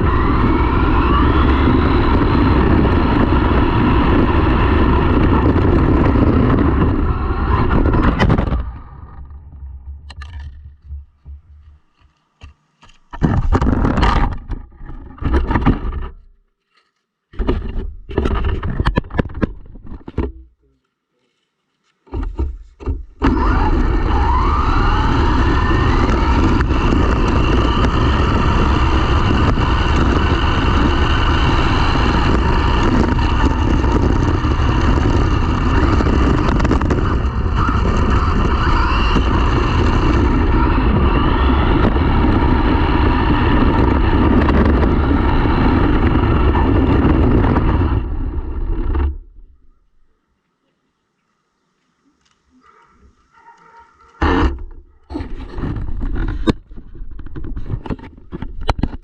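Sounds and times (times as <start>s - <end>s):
rc car rush and rumble: 0.0s - 12.1s, 13.0s - 16.3s, 17.4s - 20.5s, 22.1s - 49.6s, 54.0s - 59.0s
motor whine rising in pitch: 0.0s - 12.4s, 23.2s - 49.6s.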